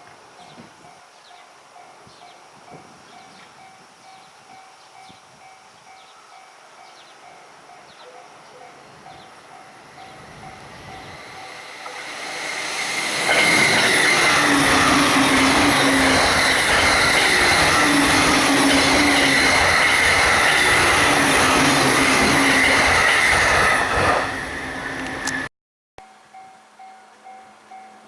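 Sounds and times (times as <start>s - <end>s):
level-crossing bell: 0.4s - 23.1s, 26.0s - 28.0s
train passing at high speed: 6.8s - 25.5s.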